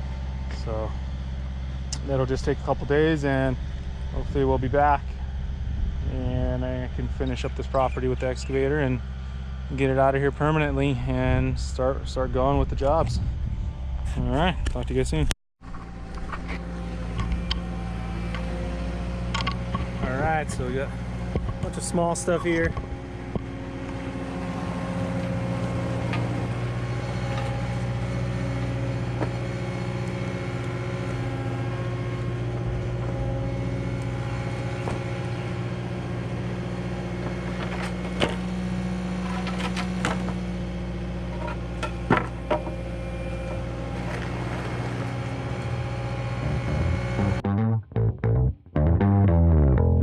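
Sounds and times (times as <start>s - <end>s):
diesel engine running: 0.0s - 47.5s.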